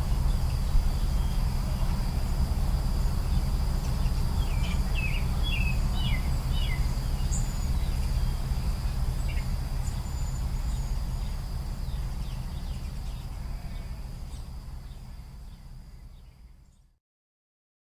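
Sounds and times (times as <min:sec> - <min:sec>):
birds chirping: 0:00.0 - 0:02.5, 0:03.1 - 0:16.3
low rumble: 0:00.0 - 0:16.1
high insect drone: 0:00.0 - 0:16.6.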